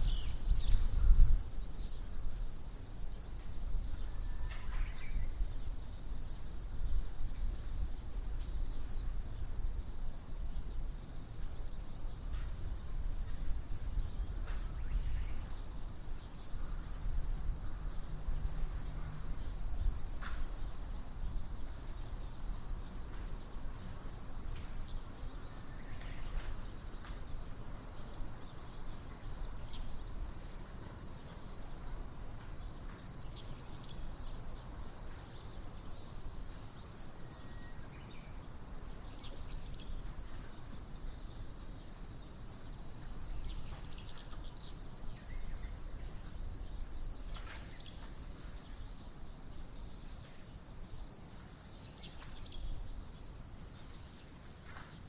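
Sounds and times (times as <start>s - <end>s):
insect chorus drone: 0.0s - 55.0s
faint short chirps: 43.2s - 44.7s.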